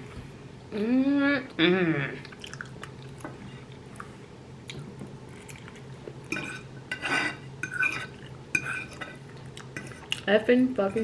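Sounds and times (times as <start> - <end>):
close-up chewing: 2.2 - 6.2
fork scraping on plate: 6.3 - 9.2.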